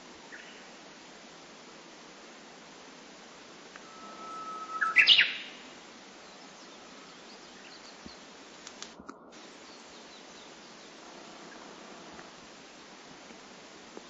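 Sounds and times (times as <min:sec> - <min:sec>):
faint short chirps: 0:03.8 - 0:05.4
bird singing whistled song: 0:03.8 - 0:05.6
small clicks: 0:08.6 - 0:09.2.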